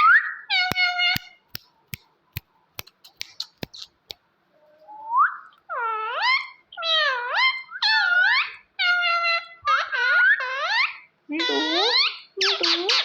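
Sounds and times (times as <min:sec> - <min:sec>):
parrot clicking: 0:00.5 - 0:04.2.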